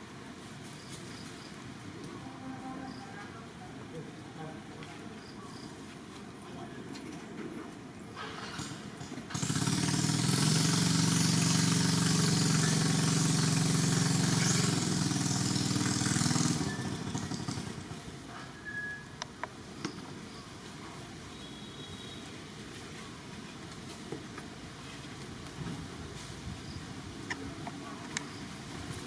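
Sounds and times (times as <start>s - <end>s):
motor engine running: 8.2s - 18.0s.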